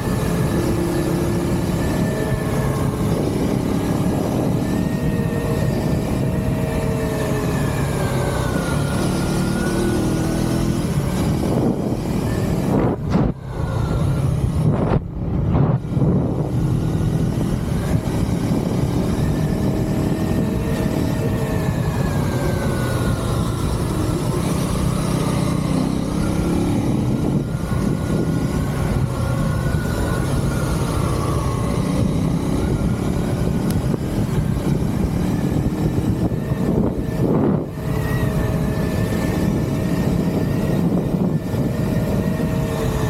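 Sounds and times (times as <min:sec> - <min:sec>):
motorcycle engine running: 0:00.0 - 0:43.0.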